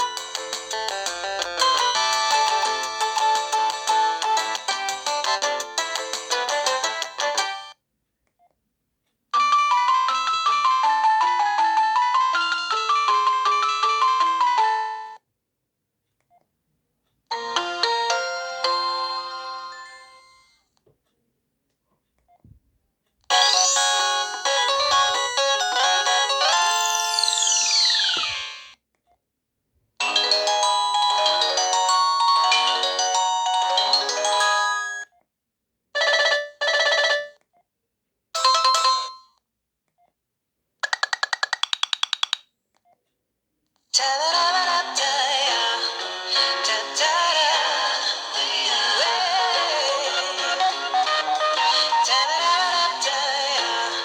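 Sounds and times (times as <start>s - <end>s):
phone ringtone melodies: 0.0s - 7.8s, 9.4s - 15.2s, 17.3s - 20.6s, 23.3s - 28.6s, 30.0s - 35.1s, 36.0s - 37.4s, 38.4s - 39.3s
phone ring tones: 23.3s - 28.7s, 30.0s - 35.1s, 36.0s - 37.4s, 38.4s - 39.3s.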